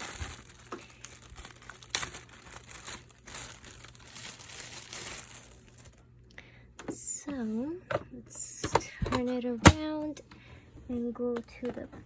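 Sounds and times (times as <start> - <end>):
plastic packaging crinkling: 0.0 - 6.2.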